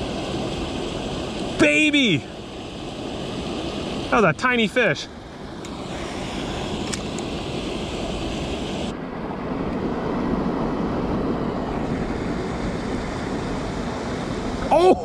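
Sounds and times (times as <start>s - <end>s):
creek rushing over rocks: 0.0s - 8.9s
wind noise on microphone: 5.4s - 15.0s.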